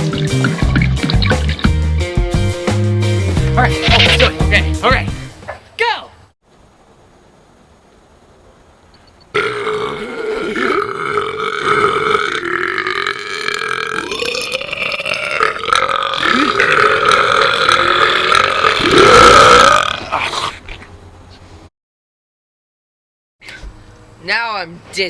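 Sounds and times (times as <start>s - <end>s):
man belching: 9.4s - 20.1s.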